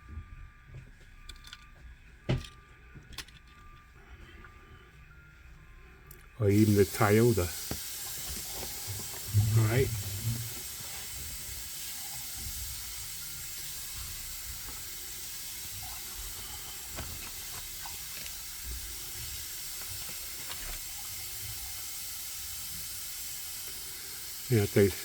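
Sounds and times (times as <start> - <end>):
background hiss: 6.4 - 25.0.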